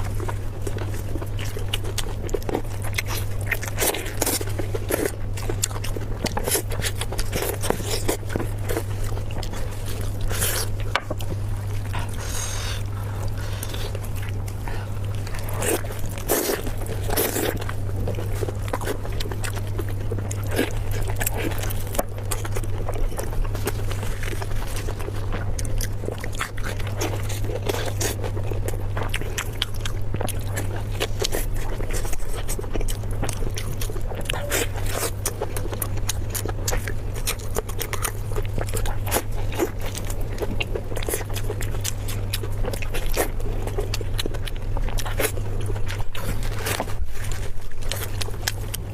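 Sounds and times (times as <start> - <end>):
low hum: 0.0 - 48.9
person chewing crunchy food: 0.0 - 48.9.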